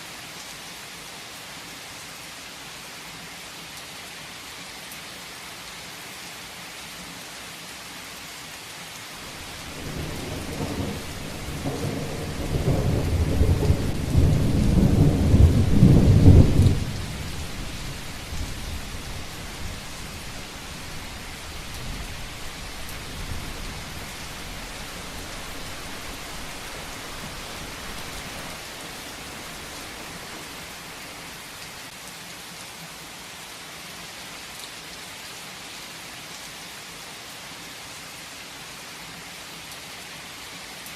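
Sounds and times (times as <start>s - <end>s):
heavy rain falling: 8.6s - 36.6s
rolling thunder: 9.3s - 29.0s.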